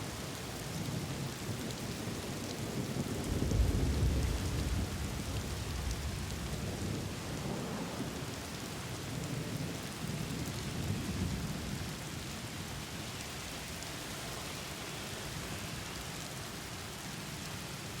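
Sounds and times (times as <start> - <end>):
thunder rumbling: 2.6 - 8.3.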